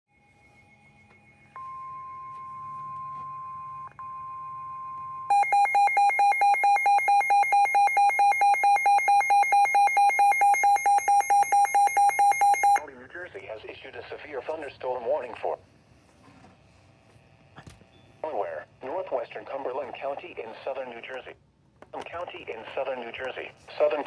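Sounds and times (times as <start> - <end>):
steady warning alarm tone: 0.4 - 12.8
rapid electronic alarm beeping: 5.3 - 12.8.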